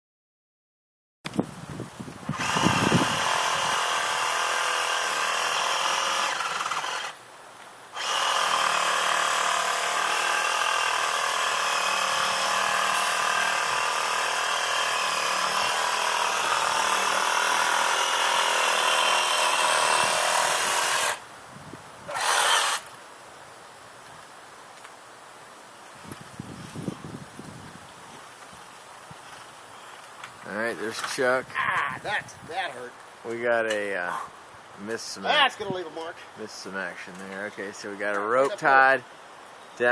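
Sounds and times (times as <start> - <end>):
reciprocating saw cutting wood: 2.3 - 7.2, 8.0 - 21.2, 22.1 - 22.9.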